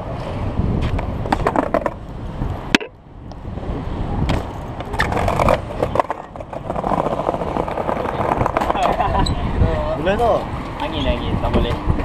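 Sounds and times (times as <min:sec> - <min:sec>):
skateboard wheels rolling on pavement: 0:00.0 - 0:12.0
skateboard clacks: 0:01.0 - 0:02.0, 0:04.3 - 0:09.3.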